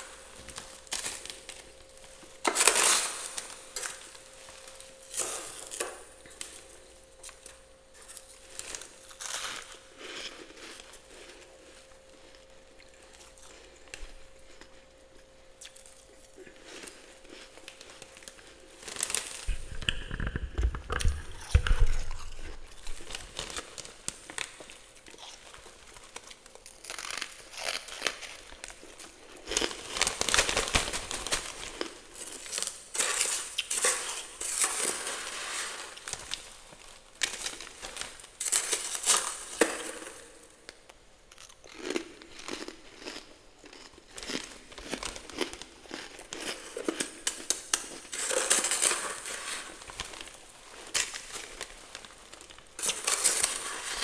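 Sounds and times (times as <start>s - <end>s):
freezer frost being scraped: 29.6s - 36.5s, 47.0s - 54.0s.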